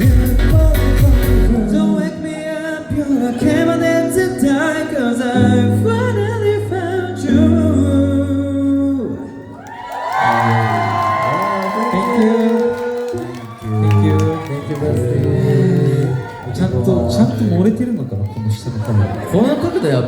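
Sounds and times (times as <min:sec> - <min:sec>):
heavy beat: 0:00.0 - 0:01.7
held bass notes: 0:00.0 - 0:01.9.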